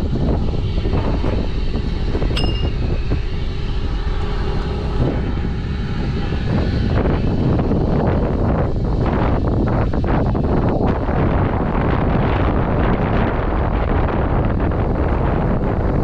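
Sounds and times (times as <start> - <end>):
engine running: 0.0 - 16.0
high metallic ring: 2.3 - 3.0.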